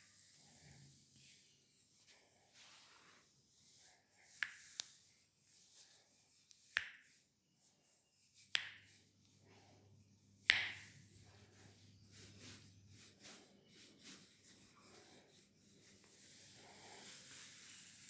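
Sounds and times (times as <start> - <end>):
sharp snaps: 4.4 - 5.0, 6.5 - 7.2, 8.5 - 9.0, 10.5 - 10.9.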